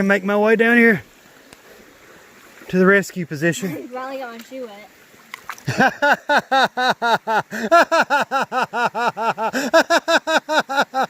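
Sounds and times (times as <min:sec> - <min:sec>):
person laughing hard: 0:05.7 - 0:11.0.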